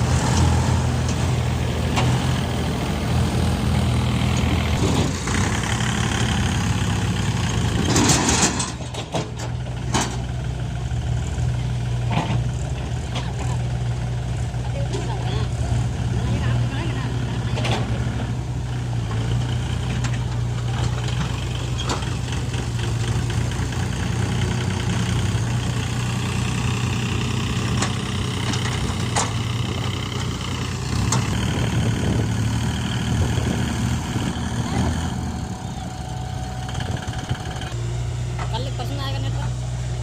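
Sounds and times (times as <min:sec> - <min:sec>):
backhoe loader diesel engine running: 0:00.0 - 0:40.0.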